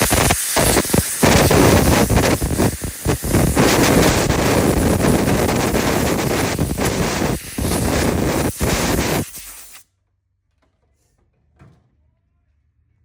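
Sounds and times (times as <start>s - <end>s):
compressed air blowing: 0.0s - 9.8s.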